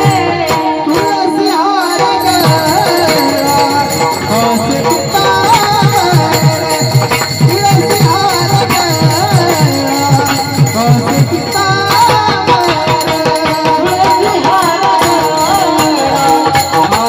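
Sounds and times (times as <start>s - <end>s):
hand drum beating: 0.0s - 17.0s
jingling percussion: 0.0s - 17.0s
wavering voice melody: 0.0s - 17.0s.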